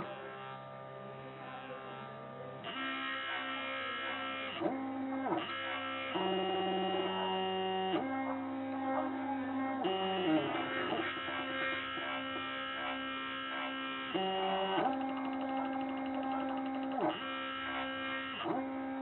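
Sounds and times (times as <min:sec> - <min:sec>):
spindle motor buzz: 0:00.0 - 0:19.0
stepper motors whining: 0:04.0 - 0:19.0.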